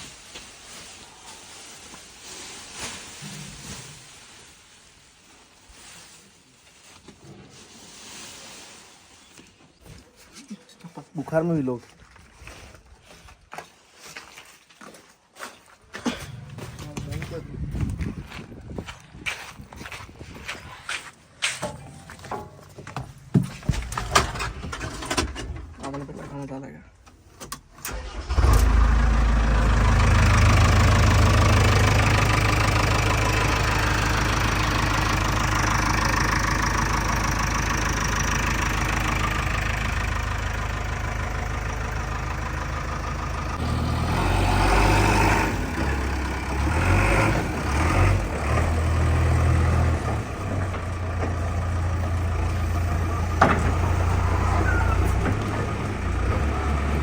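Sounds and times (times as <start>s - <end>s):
backhoe diesel engine running: 16.0s - 18.8s, 27.9s - 57.0s.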